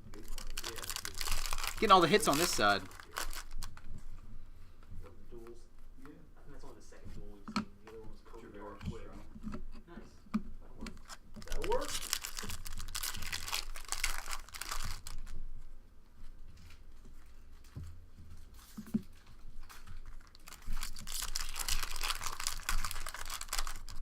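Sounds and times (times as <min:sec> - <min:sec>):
foil wrappers crinkling and tearing: 0:00.0 - 0:03.9, 0:11.0 - 0:15.4, 0:19.6 - 0:24.0.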